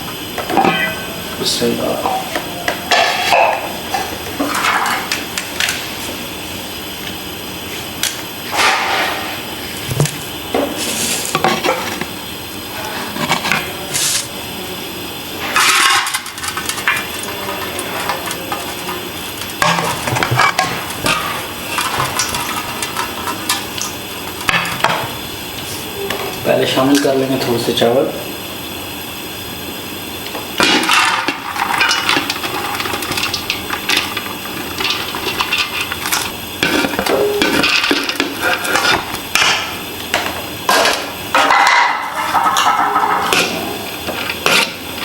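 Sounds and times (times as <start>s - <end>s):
pots and metal utensils clinking: 0.0s - 5.9s, 15.4s - 25.2s, 30.2s - 45.0s.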